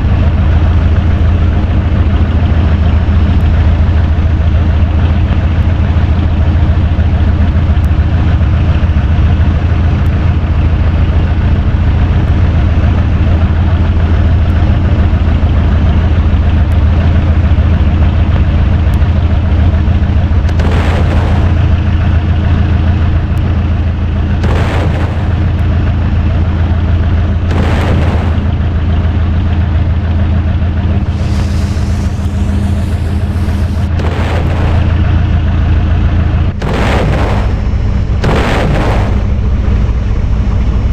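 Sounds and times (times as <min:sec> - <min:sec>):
electric fan running: 0:00.0 - 0:40.9
short bursts of noise: 0:31.0 - 0:35.1.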